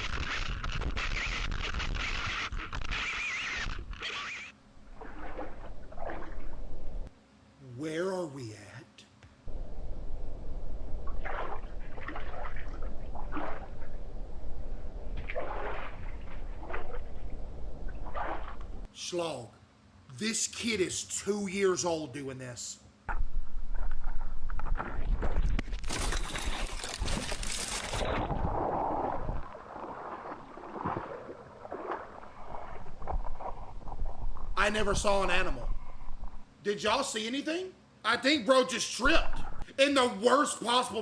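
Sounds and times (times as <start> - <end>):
water splashing: 4.8 - 7.0, 10.9 - 18.9, 25.9 - 34.5
steady low rumble: 9.5 - 12.1, 12.7 - 15.3.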